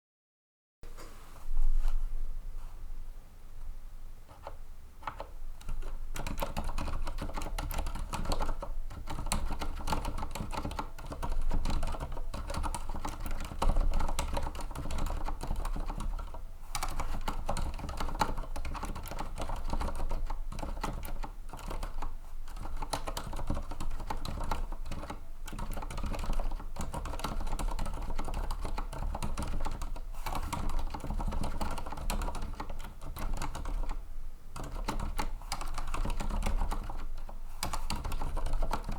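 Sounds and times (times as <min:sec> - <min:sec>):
typing on mechanical keyboard: 0:04.3 - 0:34.0, 0:34.6 - 0:38.9.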